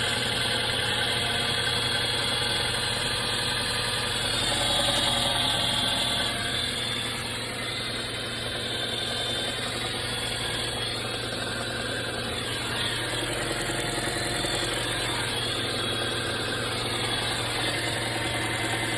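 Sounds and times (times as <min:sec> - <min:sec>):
car engine idling: 0:00.0 - 0:18.9.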